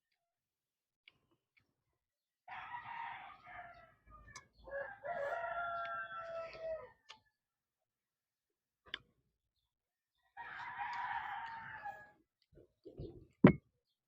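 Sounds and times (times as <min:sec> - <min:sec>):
rooster crowing: 0:02.5 - 0:04.0, 0:04.7 - 0:07.1, 0:10.4 - 0:12.2.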